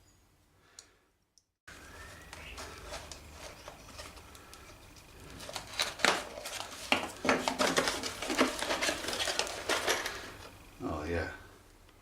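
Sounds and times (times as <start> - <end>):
packaging rustling: 1.8 - 10.6.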